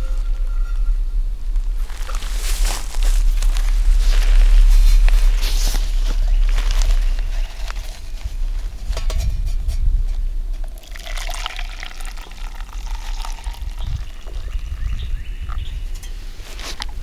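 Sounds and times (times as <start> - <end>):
low rumble: 0.0 - 17.0
water trickling as it is poured: 10.6 - 14.8.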